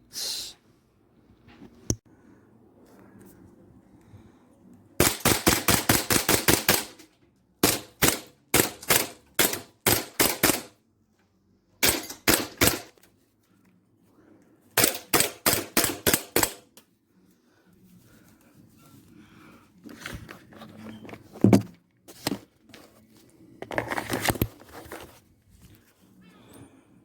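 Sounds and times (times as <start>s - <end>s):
airsoft pistol shots: 5.0s - 7.0s, 14.8s - 16.6s.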